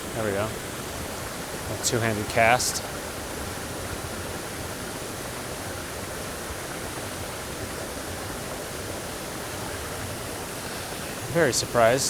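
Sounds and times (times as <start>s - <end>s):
creek rushing over rocks: 0.0s - 12.0s.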